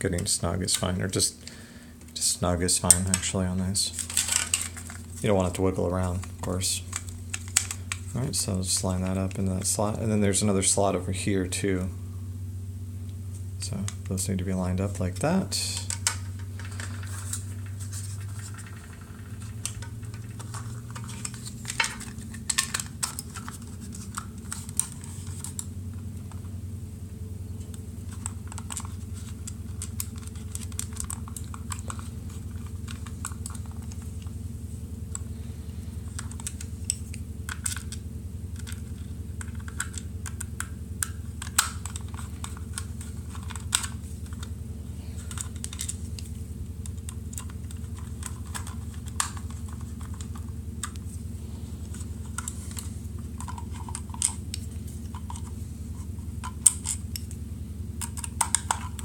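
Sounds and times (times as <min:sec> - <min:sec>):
low hum: 0:00.0 - 0:59.0
plastic parts clicking together: 0:04.0 - 0:08.2, 0:15.7 - 0:25.7, 0:27.6 - 0:34.3, 0:36.0 - 0:38.0, 0:38.6 - 0:44.5, 0:45.2 - 0:51.0, 0:51.8 - 0:55.5, 0:56.4 - 0:57.4, 0:58.0 - 0:59.0.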